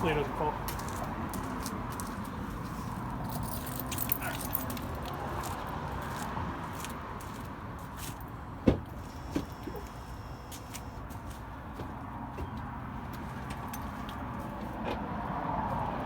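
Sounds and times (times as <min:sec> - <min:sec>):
keys jangling: 0:03.2 - 0:05.6.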